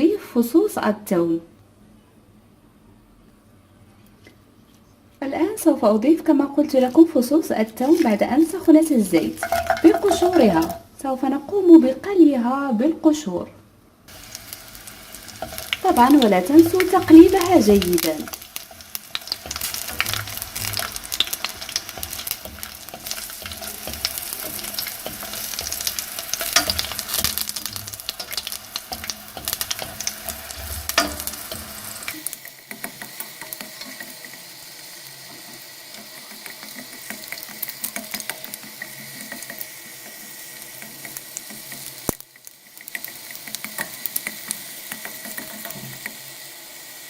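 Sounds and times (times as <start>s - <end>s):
garlic sizzling in oil: 7.4s - 11.6s, 14.1s - 47.0s.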